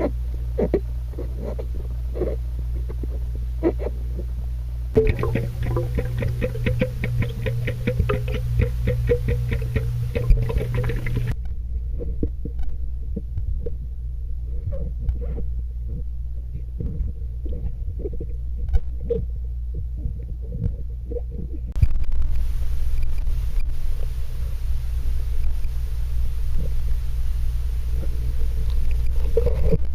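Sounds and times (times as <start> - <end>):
muffled underwater rumble: 0.0 - 29.9
underwater bubbling clicks and pops: 5.0 - 11.4.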